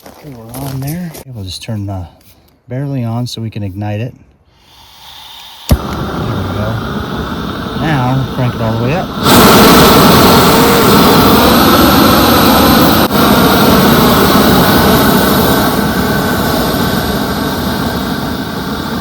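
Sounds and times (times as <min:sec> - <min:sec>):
torch burner flame rushing: 0:05.0 - 0:19.0.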